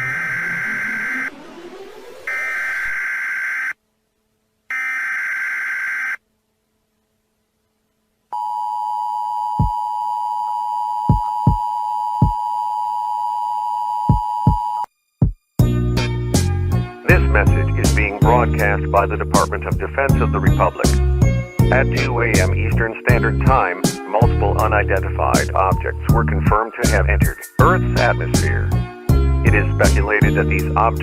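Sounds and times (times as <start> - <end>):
buzzy data tone bursts: 0.0 - 3.7.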